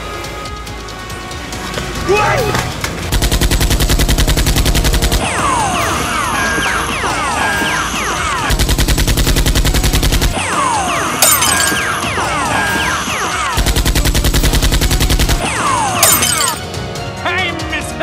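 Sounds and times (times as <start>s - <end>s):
machine-gun fire: 3.1s - 5.4s, 8.5s - 10.4s, 11.2s - 11.9s, 13.6s - 16.6s.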